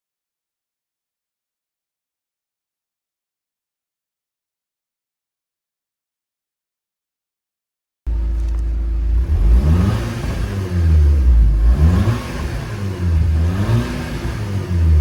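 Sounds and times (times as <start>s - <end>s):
car engine revving: 8.1s - 15.0s.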